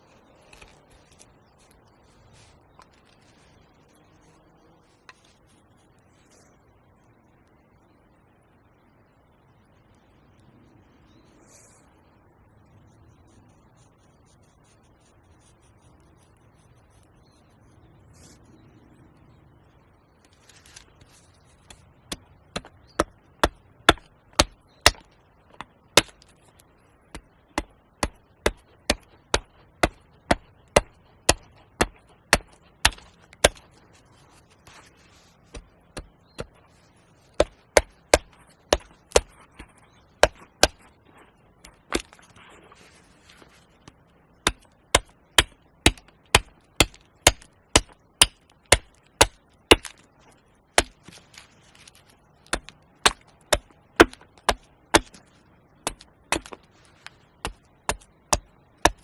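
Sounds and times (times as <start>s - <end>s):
axe chopping wood: 22.1s - 26.4s, 27.1s - 33.8s, 35.5s - 36.6s, 37.3s - 40.9s, 41.6s - 42.3s, 43.3s - 50.1s, 50.7s - 59.0s.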